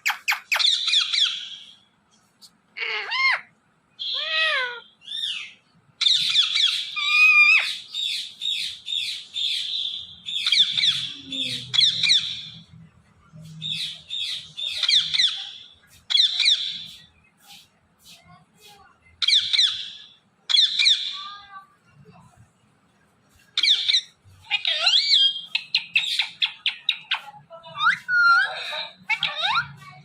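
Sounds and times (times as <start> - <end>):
parakeet squawking: 0.0 - 1.8, 2.8 - 12.6, 13.7 - 17.0, 19.2 - 21.3, 23.6 - 30.0.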